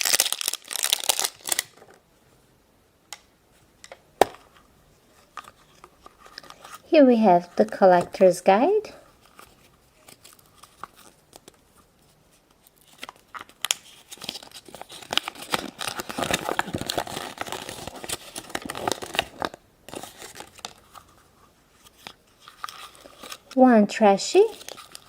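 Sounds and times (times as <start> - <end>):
packaging crinkling and tearing: 0.0 - 2.0, 5.2 - 8.2, 9.2 - 21.2, 21.8 - 23.6, 24.2 - 25.0.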